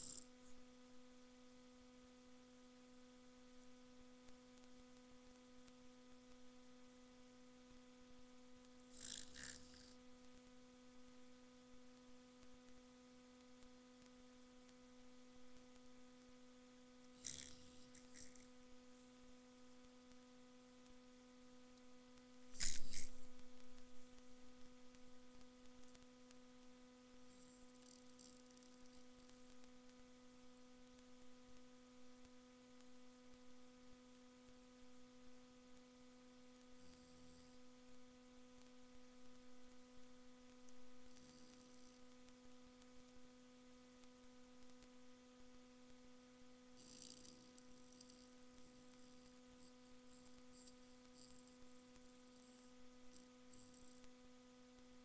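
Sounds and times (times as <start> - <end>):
dog snoring softly: 0.0 - 0.6, 8.7 - 10.1, 17.0 - 18.6, 22.5 - 23.8, 27.2 - 30.0, 36.6 - 38.8, 40.8 - 42.4, 46.7 - 54.3
steady electrical hum: 0.0 - 55.0.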